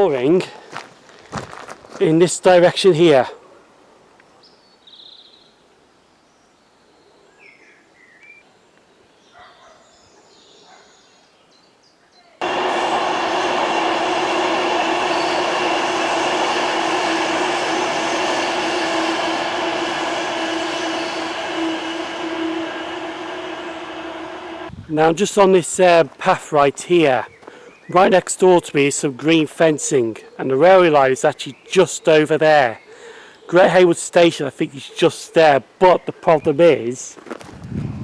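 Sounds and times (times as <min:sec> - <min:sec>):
faint birdsong: 0:04.2 - 0:12.4, 0:26.4 - 0:37.1
steady hum: 0:12.4 - 0:24.8
train rushing past: 0:12.4 - 0:25.5.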